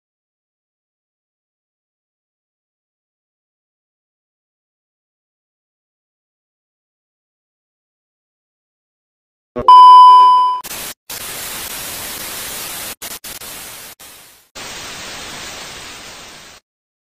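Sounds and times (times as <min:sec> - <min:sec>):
loud steady beep: 0:09.6 - 0:10.6
static hiss: 0:10.7 - 0:16.6.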